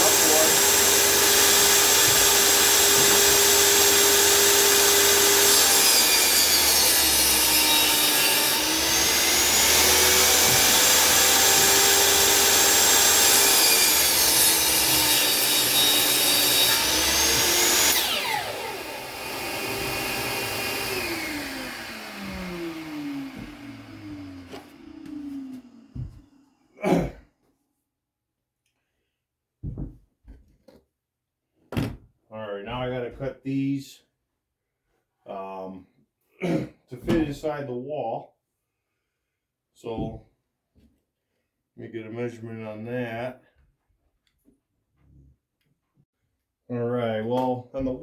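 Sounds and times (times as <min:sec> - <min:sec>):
vacuum running: 0:00.0 - 0:05.7, 0:07.0 - 0:13.8, 0:14.4 - 0:26.5
table saw cutting wood: 0:00.0 - 0:26.6.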